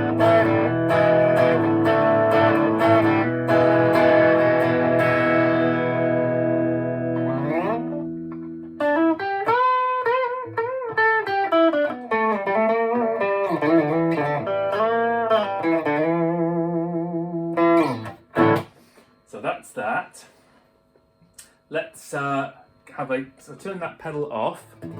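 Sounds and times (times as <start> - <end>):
overdriven electric guitar: 0.0 - 19.0.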